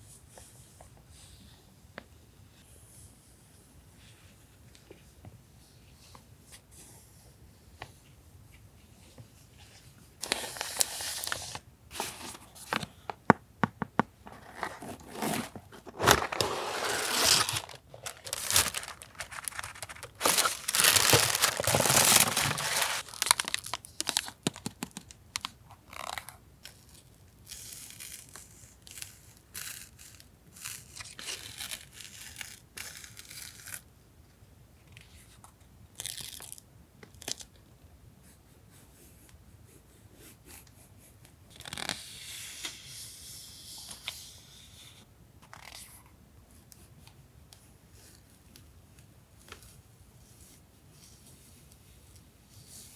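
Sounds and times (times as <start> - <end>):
packaging rustling: 10.2 - 13.4, 14.2 - 25.5
packaging tearing and crinkling: 14.3 - 26.2.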